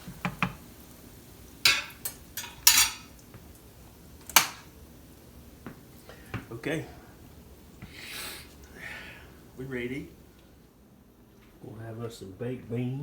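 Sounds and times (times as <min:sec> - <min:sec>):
utensils clinking on dishes: 0:01.6 - 0:03.2.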